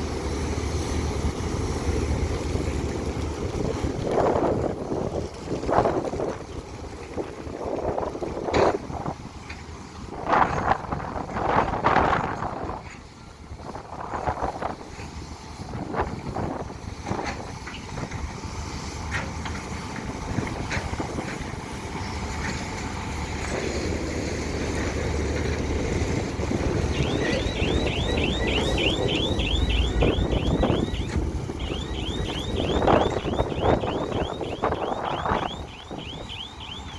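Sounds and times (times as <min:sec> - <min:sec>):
diesel excavators rumbling: 0:00.0 - 0:36.9
wind buffeting microphone: 0:23.9 - 0:36.9
high rising chirps: 0:26.9 - 0:36.9.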